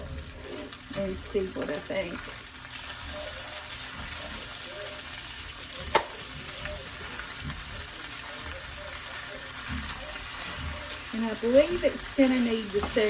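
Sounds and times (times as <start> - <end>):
food sizzling in a pan: 0.0 - 13.0.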